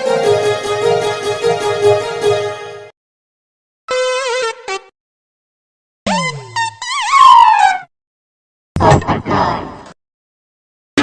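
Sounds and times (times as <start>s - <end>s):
bright keyboard music: 0.0s - 2.9s.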